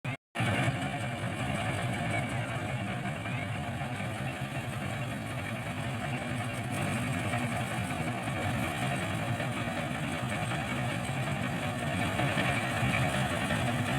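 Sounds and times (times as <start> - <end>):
harvester engine running: 0.4 - 13.9.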